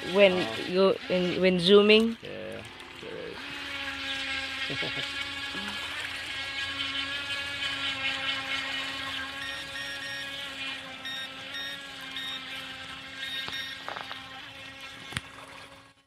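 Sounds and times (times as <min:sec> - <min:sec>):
electric motor high whine: 0:03.4 - 0:15.1
short electronic beeps: 0:09.4 - 0:10.3, 0:11.0 - 0:12.4, 0:13.2 - 0:13.8.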